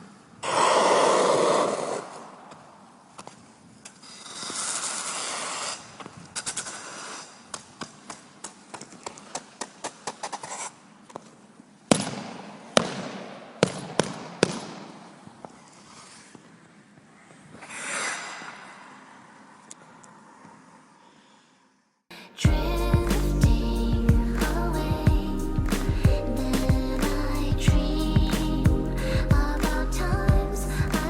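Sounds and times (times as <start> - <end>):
ice skate gliding swish: 3.9 - 11.3, 15.4 - 19.6
skate blades scraping ice: 3.9 - 11.4, 15.4 - 19.2.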